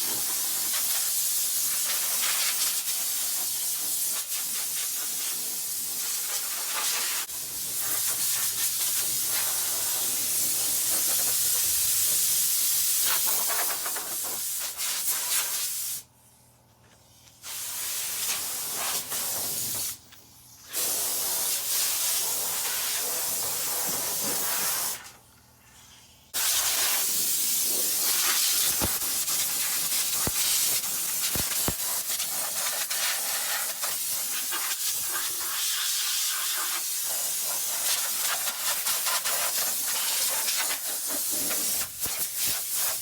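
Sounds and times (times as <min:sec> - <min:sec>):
compressed air hissing from nozzle: 0:00.0 - 0:16.1, 0:17.3 - 0:25.1, 0:26.4 - 0:43.0
sharp clicks: 0:30.0 - 0:31.9.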